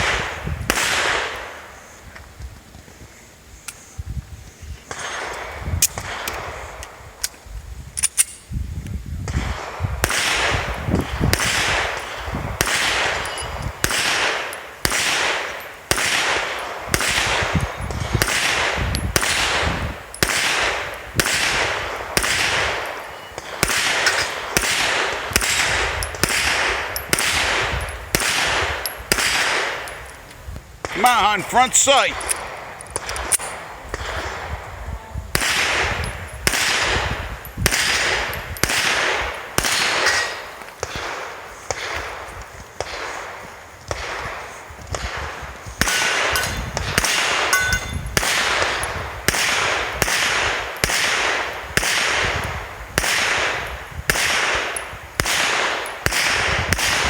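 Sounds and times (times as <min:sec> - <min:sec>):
pistol shots with echo: 0:00.0 - 0:01.5, 0:09.3 - 0:30.0, 0:35.3 - 0:42.0, 0:45.8 - 0:52.4, 0:53.0 - 0:57.0.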